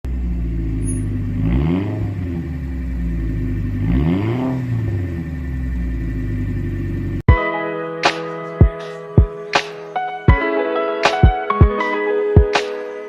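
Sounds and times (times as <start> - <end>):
engine throttle blips: 0.0 - 7.2
car engine idling: 0.0 - 7.3.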